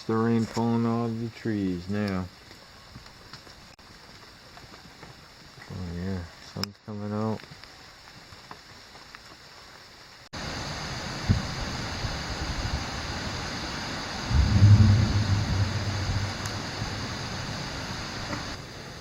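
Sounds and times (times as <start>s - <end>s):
outdoor rush of noise: 7.6s - 19.0s
low rumble: 14.2s - 17.4s
brief thud: 14.3s - 16.4s.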